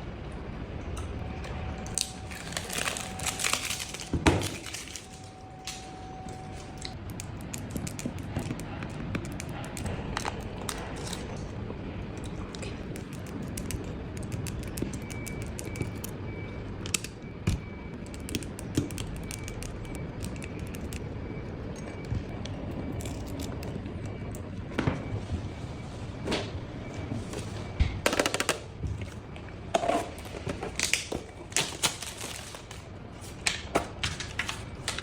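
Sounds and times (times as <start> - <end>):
faint high pulsing tone: 4.7 - 7.0
small clicks taps and scrapes: 12.2 - 16.2.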